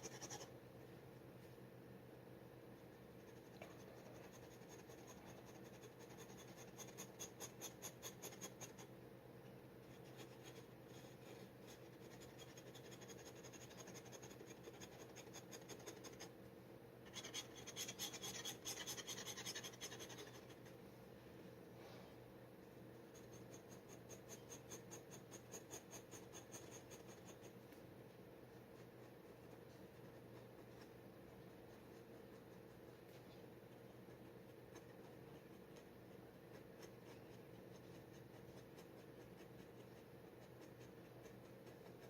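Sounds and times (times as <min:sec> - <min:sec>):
faint steady hum: 0:00.0 - 0:42.0
dip pen scratching on paper: 0:03.3 - 0:08.9, 0:09.9 - 0:16.3, 0:17.1 - 0:20.6, 0:34.1 - 0:42.0.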